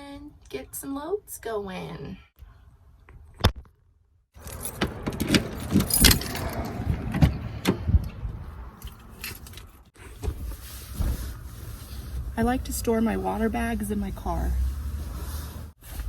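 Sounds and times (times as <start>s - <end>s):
keys jangling: 4.4s - 6.8s
rustling: 8.8s - 16.0s.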